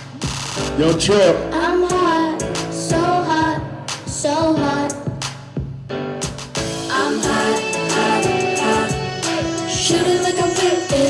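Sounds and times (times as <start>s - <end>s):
hip-hop beat: 0.0s - 11.0s.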